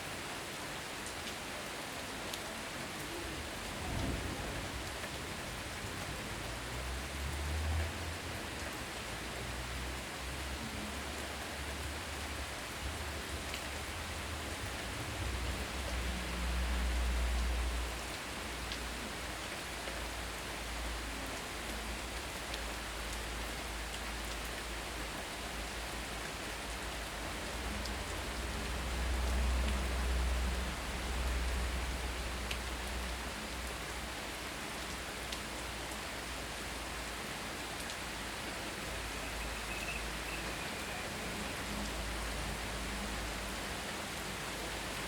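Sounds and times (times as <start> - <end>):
heavy rain: 0.0 - 45.0
raindrops ticking: 6.2 - 34.1, 37.8 - 45.0.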